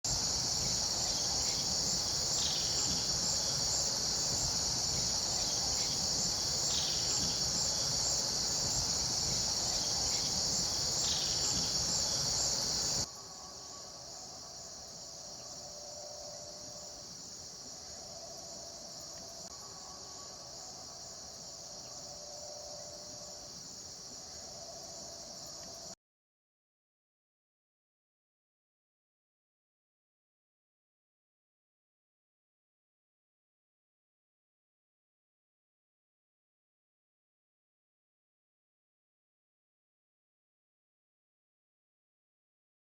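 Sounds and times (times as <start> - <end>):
shrilling insect chorus: 0.1 - 26.0.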